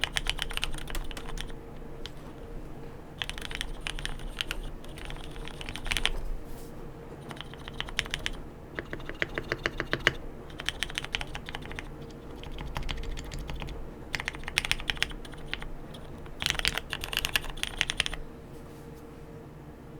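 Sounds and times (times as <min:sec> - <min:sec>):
mechanical keyboard typing: 0:00.0 - 0:02.5, 0:03.2 - 0:06.2, 0:07.1 - 0:18.2.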